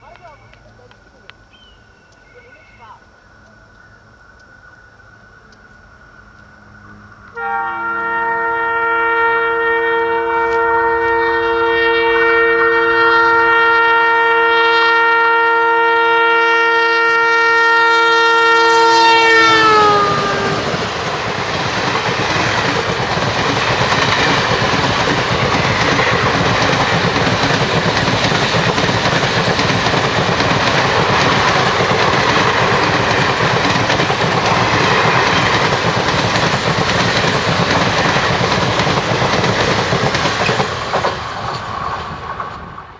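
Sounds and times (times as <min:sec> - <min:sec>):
train wheels running on rails: 0:00.0 - 0:14.4, 0:16.8 - 0:42.9
locomotive horn blast: 0:06.6 - 0:38.6.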